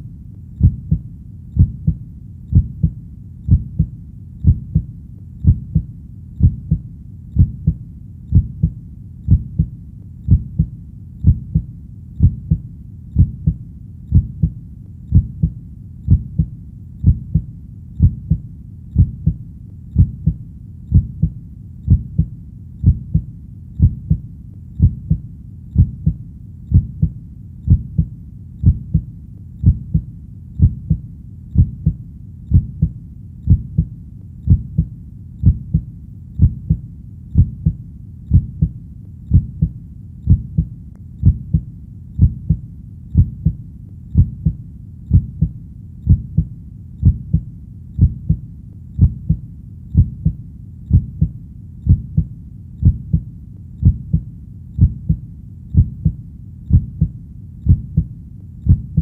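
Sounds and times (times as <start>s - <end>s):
faint low rumble: 0.0s - 59.0s
heartbeat double thump: 0.6s - 1.0s, 1.6s - 6.8s, 7.4s - 9.7s, 10.3s - 12.6s, 13.2s - 18.4s, 19.0s - 19.4s, 20.0s - 24.2s, 24.8s - 25.2s, 25.8s - 31.0s, 34.5s - 36.8s, 37.4s - 41.6s, 42.2s - 42.6s, 43.2s - 43.6s, 44.2s - 47.4s, 48.0s - 48.4s, 49.0s - 49.4s, 50.0s - 51.3s, 51.9s - 54.2s, 54.8s - 55.2s, 55.8s - 57.1s, 57.7s - 58.1s, 58.7s - 59.0s.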